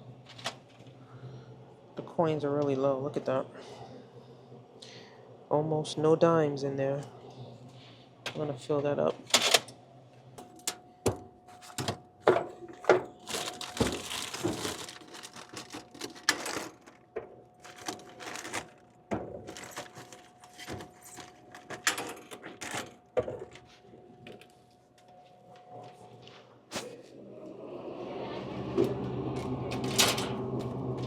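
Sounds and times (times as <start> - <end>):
faint steady hum: 0.0 - 31.0
rustling: 13.2 - 17.0, 17.6 - 21.7.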